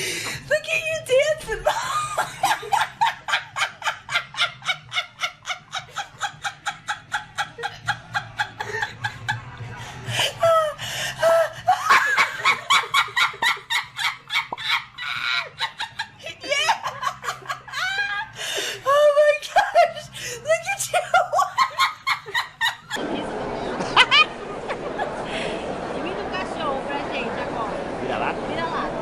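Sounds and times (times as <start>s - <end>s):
high-pitched laughter: 10.2s - 25.2s.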